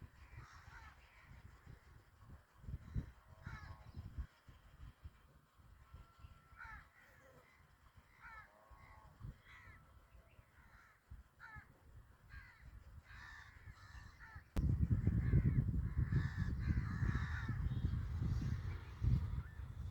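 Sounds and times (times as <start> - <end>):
crows cawing: 6.4 - 9.9, 10.5 - 17.8.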